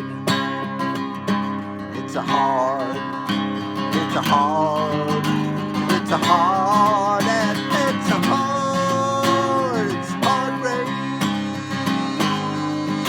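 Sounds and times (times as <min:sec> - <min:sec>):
strummed acoustic guitar: 0:00.0 - 0:13.0
person singing long notes: 0:06.1 - 0:13.0.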